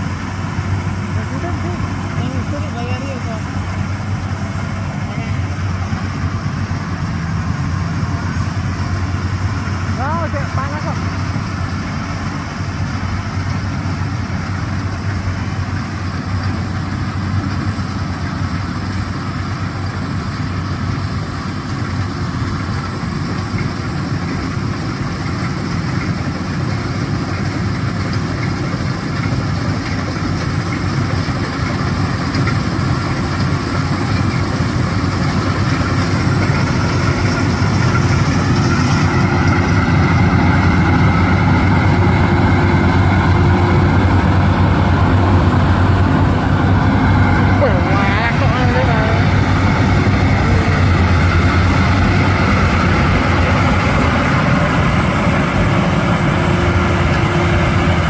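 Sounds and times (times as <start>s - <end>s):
combine harvester droning: 0.0s - 58.0s.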